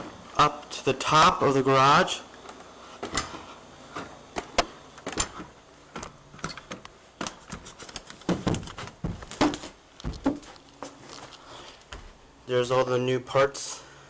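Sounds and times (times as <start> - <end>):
footsteps and knocks climbing: 2.4 - 12.9.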